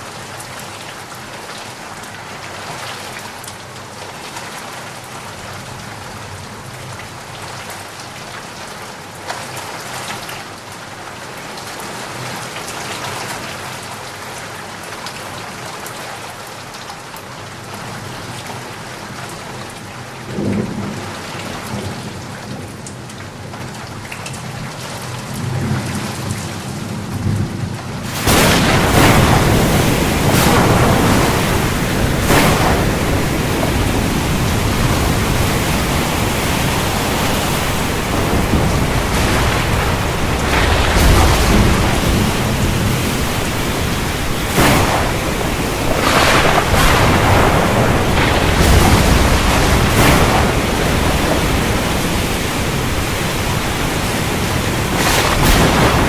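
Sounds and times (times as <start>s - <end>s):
steady rain falling: 0.0s - 56.0s
low thunder rumbling: 27.3s - 56.0s
dense rush of noise: 27.9s - 56.0s.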